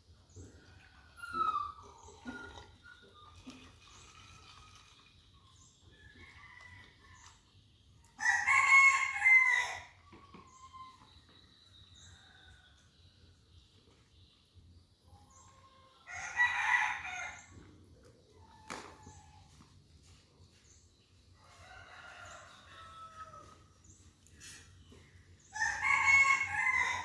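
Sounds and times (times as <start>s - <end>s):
rooster crowing: 8.2s - 10.0s, 21.5s - 23.6s, 25.5s - 27.0s.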